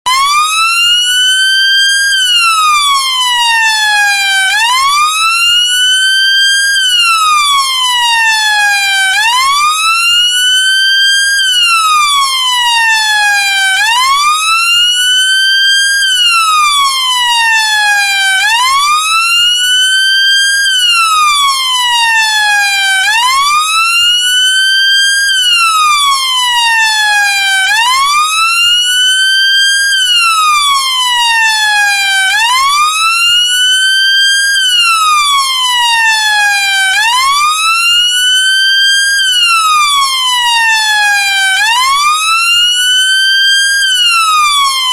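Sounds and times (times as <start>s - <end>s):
police siren wailing: 0.0s - 44.9s.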